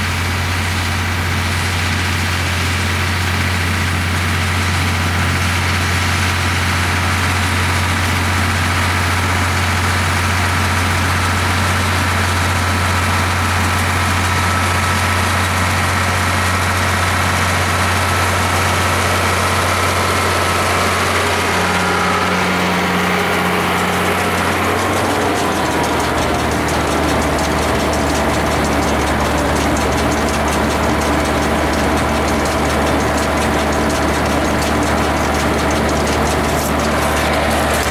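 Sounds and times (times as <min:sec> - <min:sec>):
tractor engine droning: 0:00.0 - 0:37.9
higher hum: 0:36.1 - 0:37.9.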